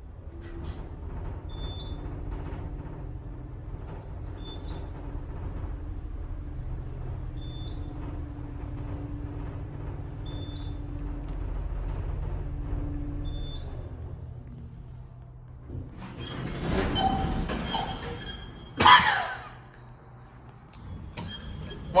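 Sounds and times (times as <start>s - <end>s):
elevator low rumble: 0.0s - 22.0s
steady hum: 2.0s - 16.1s.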